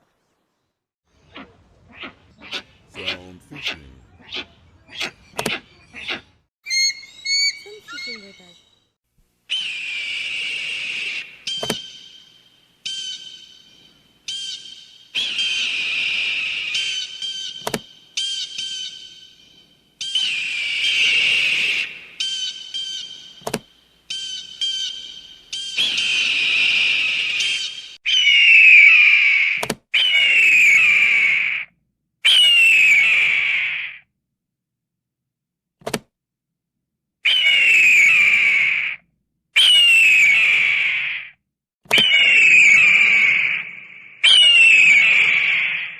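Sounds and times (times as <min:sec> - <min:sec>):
eagle calling: 0:01.2 - 0:08.7, 0:09.5 - 0:34.0, 0:37.3 - 0:39.0, 0:39.6 - 0:41.2, 0:41.9 - 0:45.9
sharp click: 0:05.4 - 0:05.6, 0:17.6 - 0:17.9, 0:23.4 - 0:23.7, 0:29.6 - 0:29.8.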